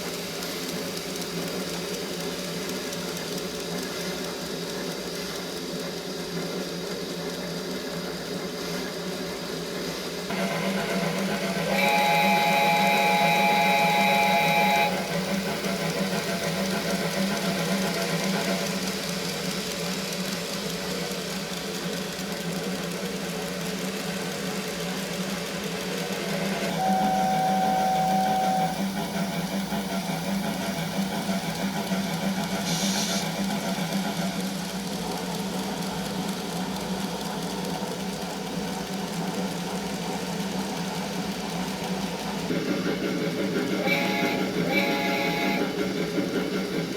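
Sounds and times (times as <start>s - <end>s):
steady mechanical hum: 0.0s - 46.9s
steam whistle: 10.3s - 17.1s, 26.6s - 30.1s, 43.8s - 45.8s
short steam hiss: 32.5s - 33.4s.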